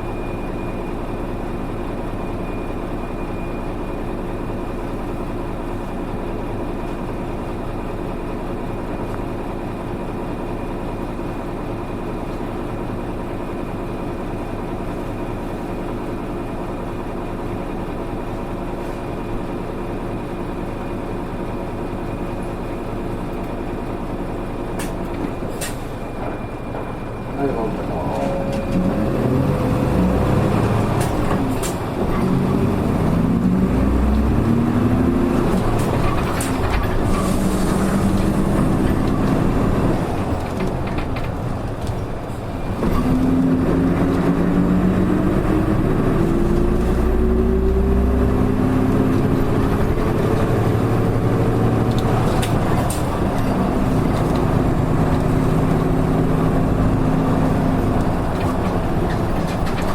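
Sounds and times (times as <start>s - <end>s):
bus accelerating: 0.0s - 59.9s
drivetrain whine: 19.3s - 59.9s.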